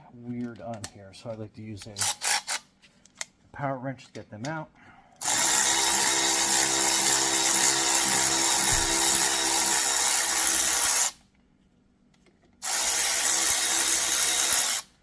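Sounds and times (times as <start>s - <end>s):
power wrench running: 5.2s - 11.2s, 12.6s - 15.0s.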